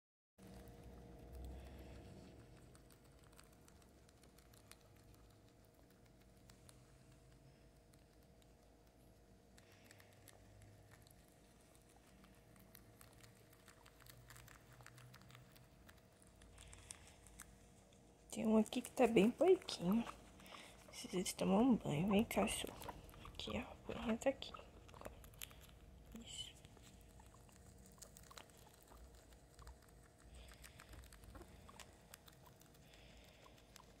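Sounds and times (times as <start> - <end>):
guinea pig chewing leaves: 0.4 - 34.0.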